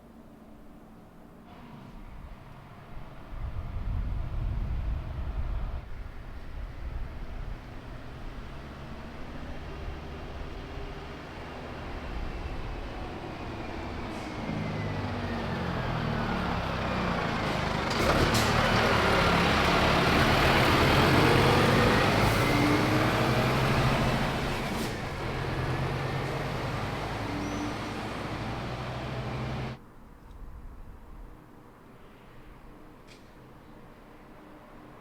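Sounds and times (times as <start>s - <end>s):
heavy vehicle driving past: 6.8s - 29.8s.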